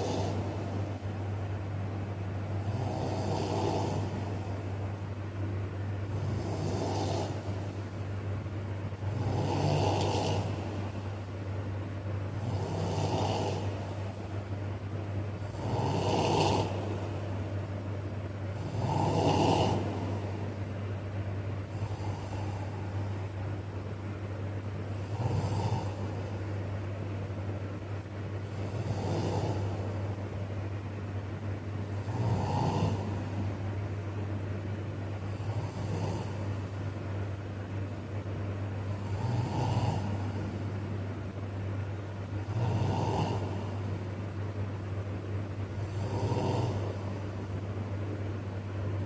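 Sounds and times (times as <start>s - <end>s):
man snoring: 0.0s - 0.9s, 2.6s - 4.5s, 6.1s - 7.7s, 9.0s - 11.0s, 12.3s - 14.0s, 15.4s - 17.1s, 18.6s - 20.3s, 21.7s - 23.2s, 24.9s - 26.4s, 28.4s - 30.1s, 31.9s - 33.5s, 35.3s - 36.7s, 38.9s - 40.6s, 42.4s - 44.0s, 45.8s - 47.2s
steady low hum: 0.0s - 49.0s.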